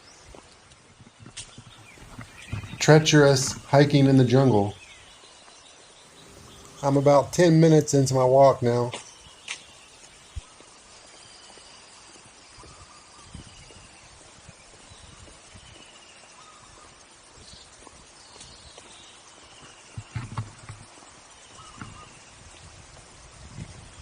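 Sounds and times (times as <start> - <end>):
footsteps on forest trail: 0.0 - 23.2
birds calling: 1.4 - 10.5, 21.5 - 22.3.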